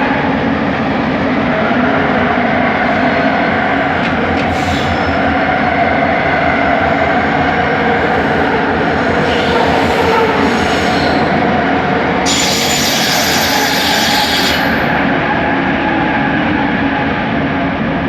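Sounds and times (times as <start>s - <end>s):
train rolling noise: 0.0s - 18.0s
train motor tones: 8.0s - 15.1s.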